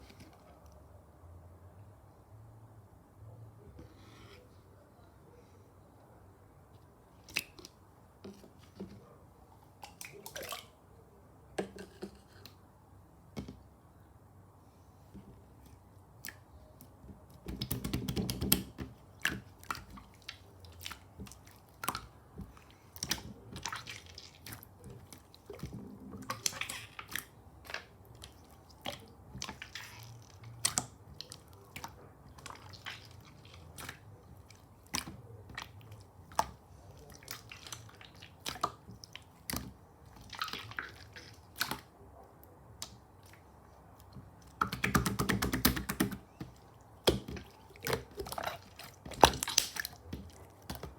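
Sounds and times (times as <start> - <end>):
hands squishing slime: 15.6 - 42.0, 42.7 - 50.9.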